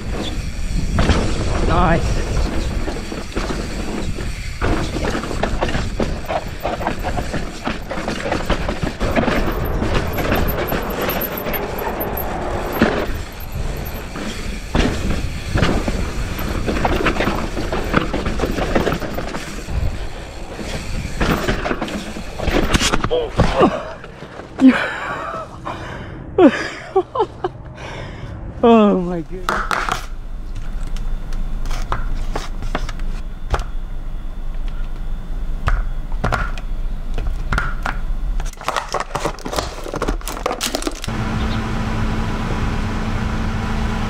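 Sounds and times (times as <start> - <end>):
bike knocking over bumps: 0.0 - 24.6
mountain bike rattling over dirt: 0.0 - 25.3, 38.4 - 41.1
tyre noise on dirt: 0.0 - 25.3.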